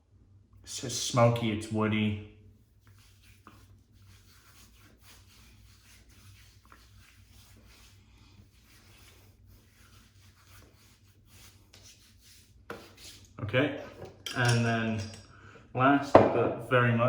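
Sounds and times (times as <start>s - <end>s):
rubbing and rustling: 2.5s - 14.2s.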